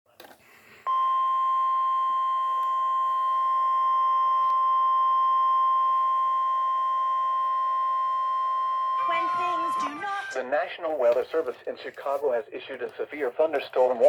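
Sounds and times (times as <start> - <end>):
steady high alert tone: 7.2 - 10.5.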